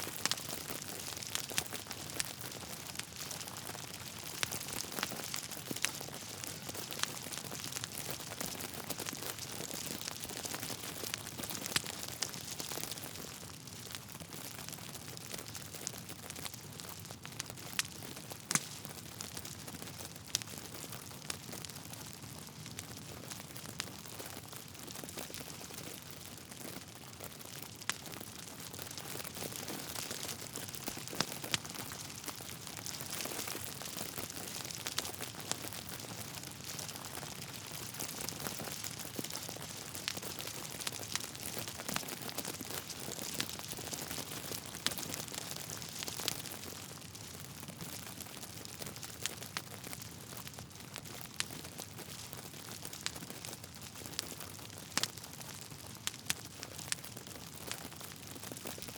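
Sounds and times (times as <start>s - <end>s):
wood fire crackling: 0.0s - 58.9s
sharp pops and snaps: 18.5s - 18.8s.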